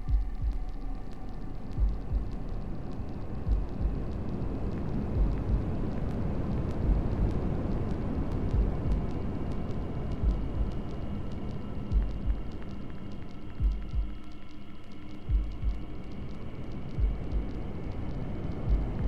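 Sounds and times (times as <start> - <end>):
heartbeat double thump: 0.0 - 0.7, 1.8 - 2.4, 3.5 - 4.1.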